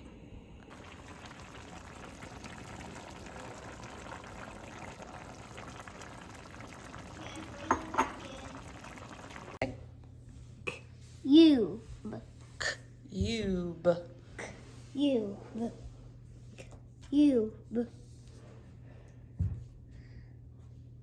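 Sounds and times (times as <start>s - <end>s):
pot of noodles boiling: 0.6s - 9.7s.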